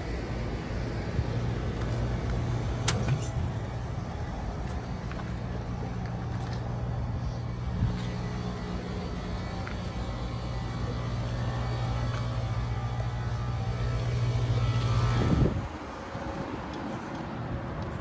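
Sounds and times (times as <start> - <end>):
compressor hum: 0.0 - 16.6
condenser fan whoosh: 10.2 - 15.8.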